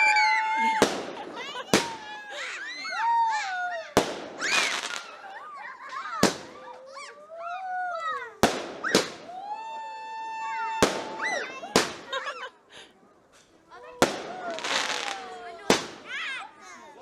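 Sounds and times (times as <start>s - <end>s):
whistling fireworks: 0.0s - 7.0s, 8.4s - 12.4s, 14.0s - 16.3s
fireworks banging: 0.1s - 6.8s, 8.4s - 9.6s, 10.7s - 12.4s, 13.3s - 16.5s.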